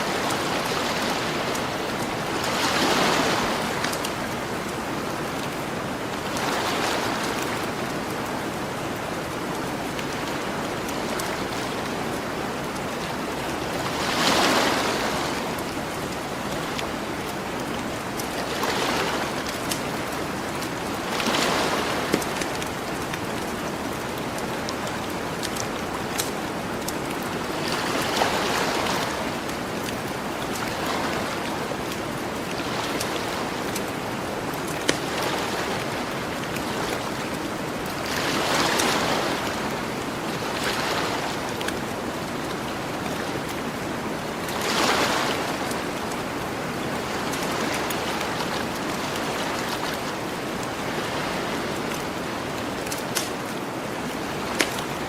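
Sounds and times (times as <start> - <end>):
ocean waves washing onto beach: 0.0 - 55.0.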